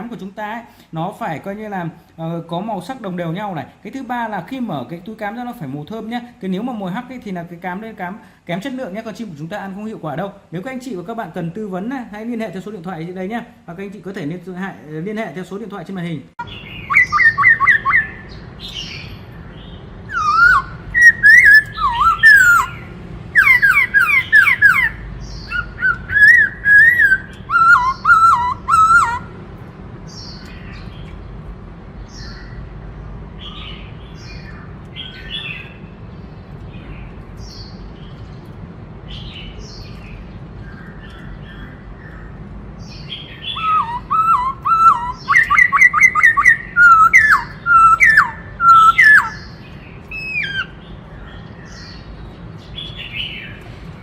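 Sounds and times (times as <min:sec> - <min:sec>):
bird warbling whistled song: 0:16.4 - 0:29.3, 0:40.7 - 0:52.0
faint bird chirps: 0:16.4 - 0:29.3, 0:39.1 - 0:53.6.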